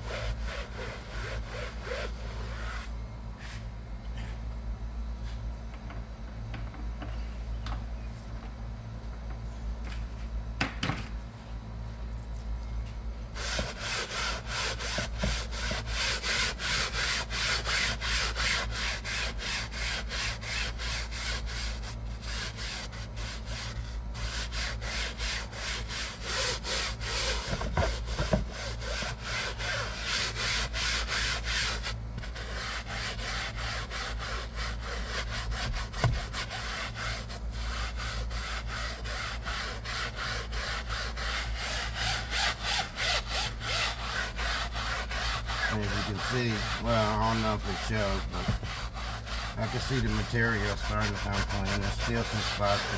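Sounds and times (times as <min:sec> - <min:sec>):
scrubbing wet upholstery: 0:39.0 - 0:52.9.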